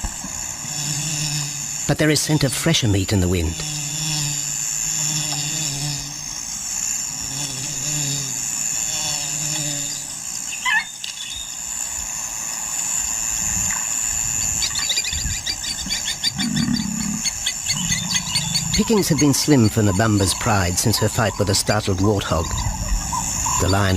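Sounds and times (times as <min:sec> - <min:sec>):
high insect drone: 0:00.0 - 0:23.9
rapid chirping: 0:14.1 - 0:23.9.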